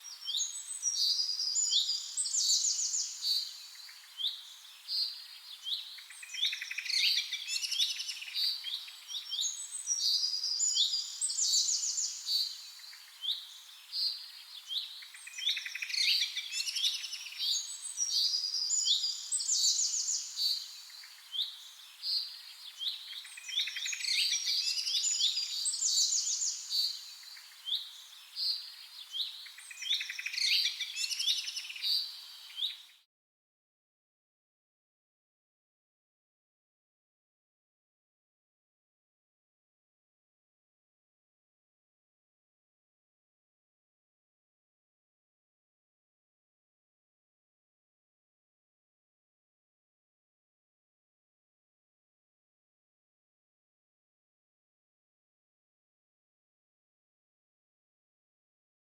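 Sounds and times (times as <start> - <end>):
songbird twittering song: 0.0 - 33.1.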